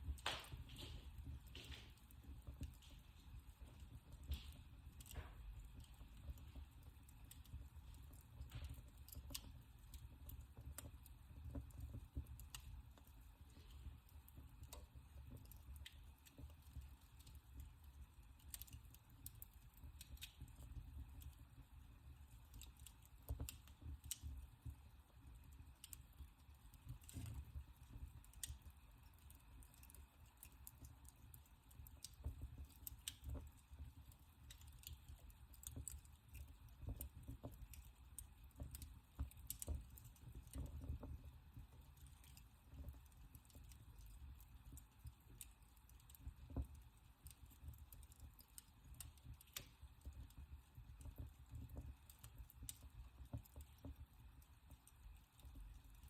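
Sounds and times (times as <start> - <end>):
low rumble of flames: 0.0 - 56.0
wood fire crackling: 0.0 - 56.0.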